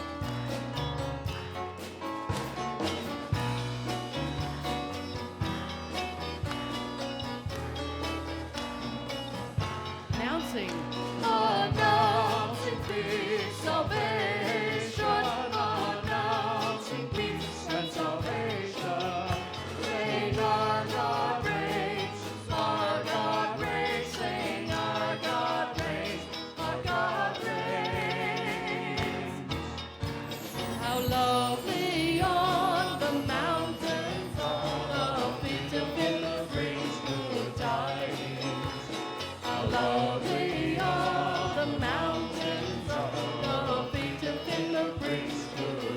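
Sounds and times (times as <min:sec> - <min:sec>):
band with bass and percussion: 0:00.0 - 0:45.9
voices singing with vibrato: 0:10.6 - 0:45.9.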